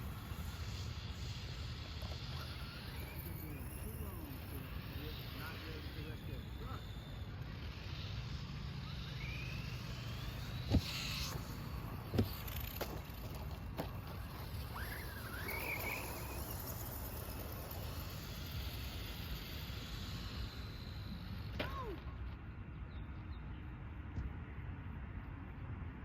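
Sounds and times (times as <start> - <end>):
electric motors whining: 0.0 - 22.8
sharp knocks from landings: 10.5 - 14.8.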